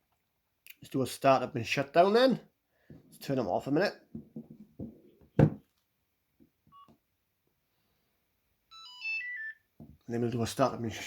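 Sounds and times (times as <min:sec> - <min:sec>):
sharp knock of phone handling: 0:05.4 - 0:05.6
phone keypad beep: 0:08.7 - 0:09.6.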